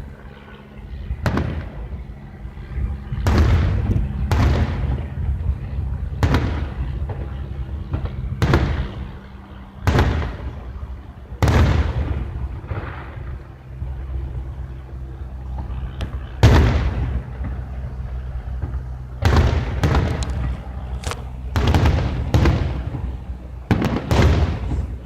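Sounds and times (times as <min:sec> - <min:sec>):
fireworks booming: 0:01.2 - 0:01.8, 0:03.2 - 0:05.1, 0:06.1 - 0:07.3, 0:07.9 - 0:09.1, 0:09.8 - 0:10.6, 0:11.4 - 0:13.5, 0:15.6 - 0:25.0.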